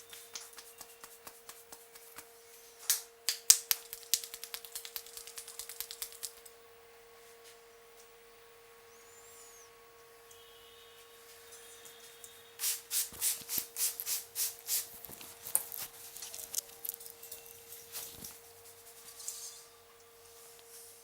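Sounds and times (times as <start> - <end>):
hands rubbing over head: 0.0 - 2.9.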